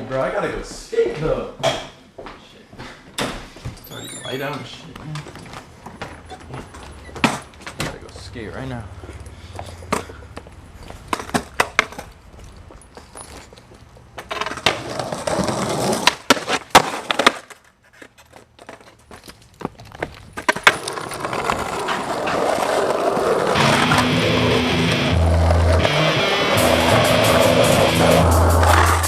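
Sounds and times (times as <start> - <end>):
skateboard wheels rolling on pavement: 5.3 - 29.0
skateboard clacking: 9.8 - 12.1, 14.1 - 19.1, 20.0 - 29.0.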